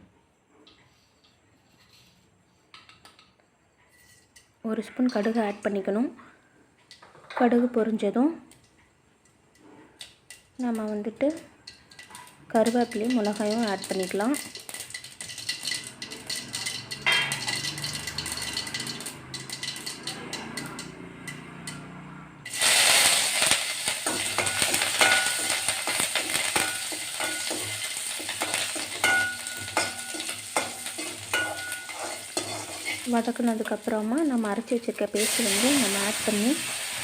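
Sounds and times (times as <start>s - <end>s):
spices sizzling in hot ghee: 10.0s - 37.0s
spatula scraping pan: 11.6s - 34.0s.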